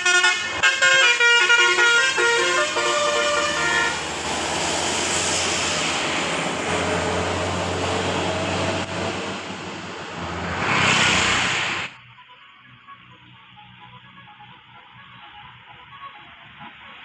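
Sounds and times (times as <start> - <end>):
bus horn tune: 0.0 - 4.4
road noise rushing: 0.0 - 12.0
bus engine running: 0.0 - 17.0.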